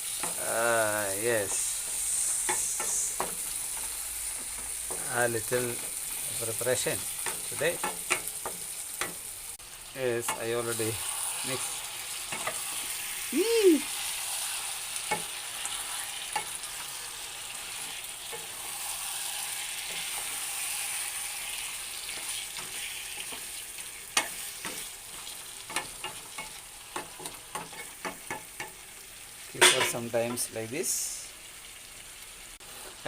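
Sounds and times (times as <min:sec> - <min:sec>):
curry sizzling in a pan: 0:00.0 - 0:33.0
utensil scraping a pan: 0:29.6 - 0:30.4.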